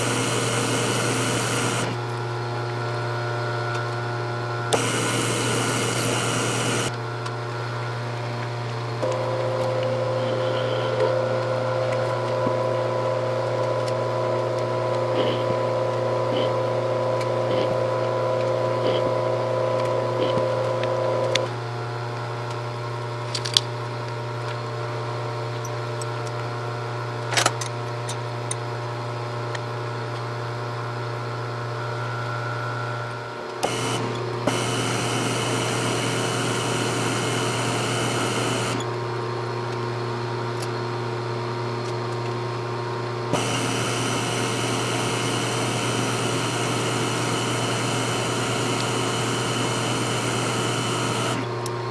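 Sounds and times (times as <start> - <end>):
milling cutter cutting metal: 0.0 - 2.1, 4.7 - 6.9, 33.6 - 38.9, 43.3 - 51.5
milling machine motor hum: 0.0 - 21.7, 32.0 - 39.0, 43.2 - 51.9
sharp clicks: 4.7 - 6.9.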